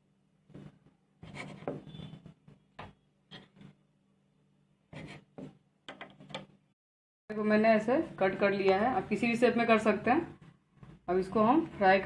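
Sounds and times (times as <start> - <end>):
dough scraping and rubbing on board: 0.6 - 2.4, 4.9 - 5.6.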